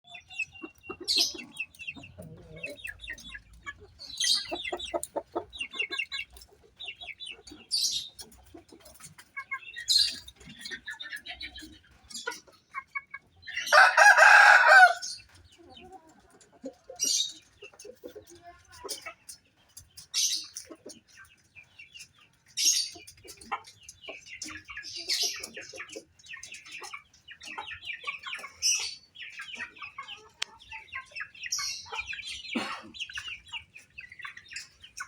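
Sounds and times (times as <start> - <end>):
roosters clucking and calling: 0.0 - 35.0
rooster crowing: 13.7 - 15.0.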